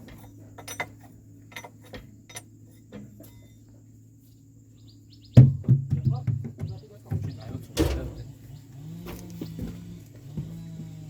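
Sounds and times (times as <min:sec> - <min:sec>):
steady low hum: 0:06.8 - 0:11.0.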